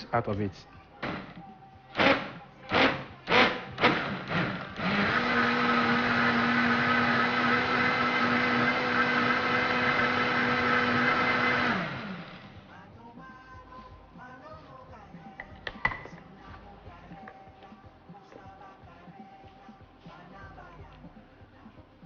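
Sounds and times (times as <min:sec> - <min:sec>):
electric blender running: 0:02.0 - 0:12.6.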